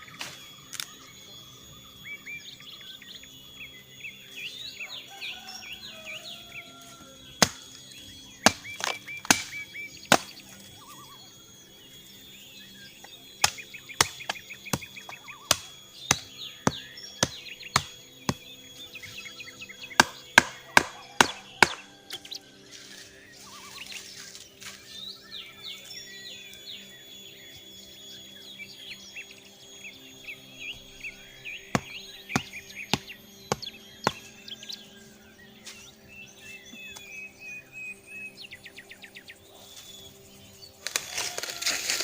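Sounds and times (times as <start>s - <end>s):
birds chirping: 0.0s - 42.0s
high insect tone: 0.0s - 42.0s
tool chopping wood: 7.4s - 7.7s, 8.4s - 10.4s, 13.4s - 18.4s, 19.9s - 21.9s, 31.7s - 34.2s.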